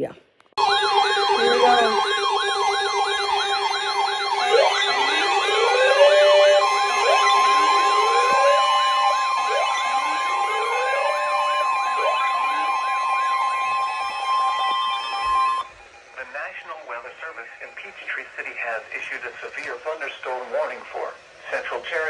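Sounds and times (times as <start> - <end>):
steady alert tones: 0.0 - 18.0
electronic sirens wailing and yelping: 0.6 - 18.1.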